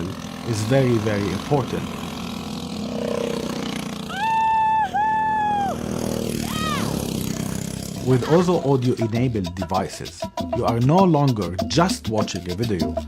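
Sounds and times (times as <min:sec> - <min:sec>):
vehicle engine drone: 0:00.0 - 0:08.9.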